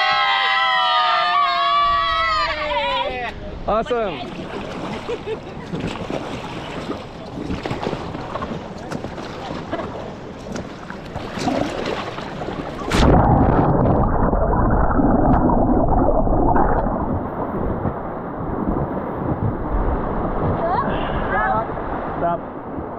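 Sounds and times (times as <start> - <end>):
wind buffeting microphone: 10.1 - 22.9.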